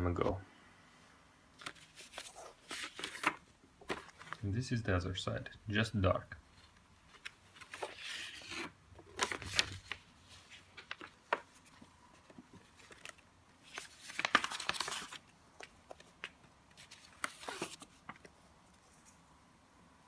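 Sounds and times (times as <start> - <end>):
paper rustling: 1.6 - 4.4, 6.6 - 19.3.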